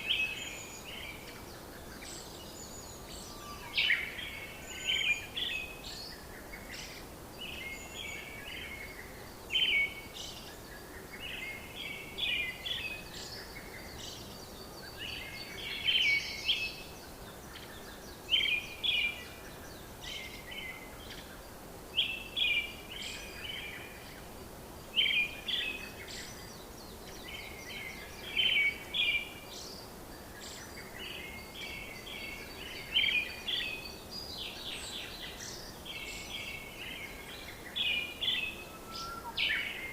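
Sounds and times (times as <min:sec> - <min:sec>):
birds chirping: 0:00.0 - 0:39.9
faint steady hiss: 0:00.0 - 0:39.9.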